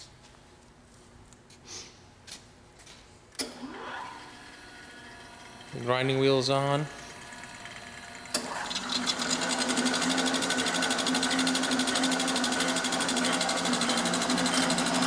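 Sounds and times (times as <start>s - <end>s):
grinder motor whirring: 6.9s - 15.0s.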